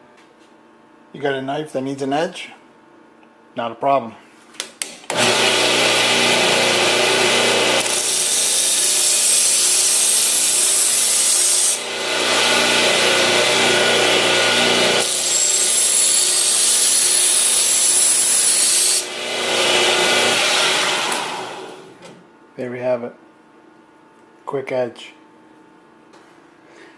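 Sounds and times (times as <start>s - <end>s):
blade grinding on sander belt: 5.1s - 21.7s
belt sander motor hum: 5.1s - 22.0s.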